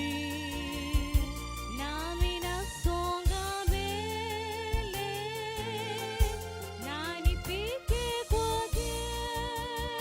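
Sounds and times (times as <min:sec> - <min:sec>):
drum beat: 0:00.0 - 0:09.5
instrumental backing: 0:00.0 - 0:10.0.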